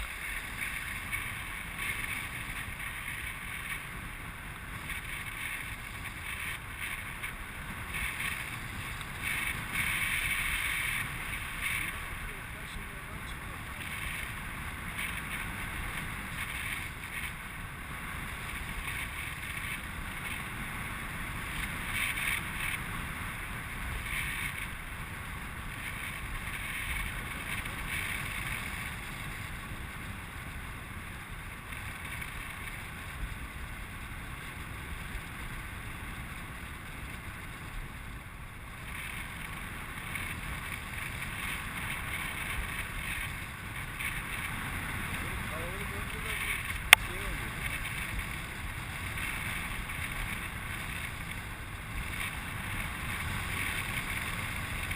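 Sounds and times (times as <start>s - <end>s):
wind rushing over microphone: 0.0s - 54.9s.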